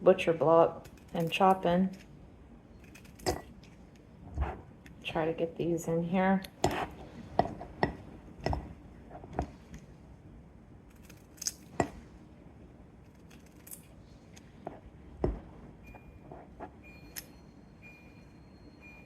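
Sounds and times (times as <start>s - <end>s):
scissors snipping: 10.9s - 11.7s.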